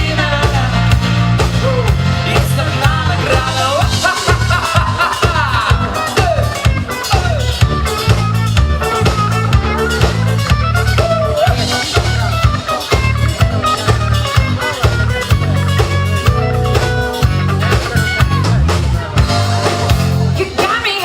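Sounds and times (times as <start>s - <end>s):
bass guitar: 0.0s - 21.0s
electric guitar lead lines: 0.0s - 21.0s
steady drum kit beat: 0.0s - 21.0s.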